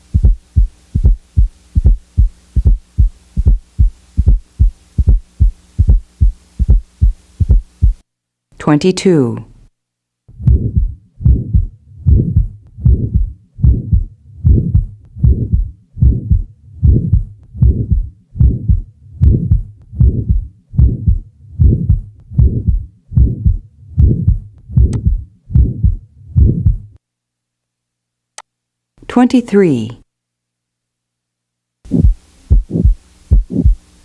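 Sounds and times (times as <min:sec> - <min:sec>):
steady heartbeat: 0:00.0 - 0:08.0, 0:10.3 - 0:27.0, 0:31.9 - 0:33.8.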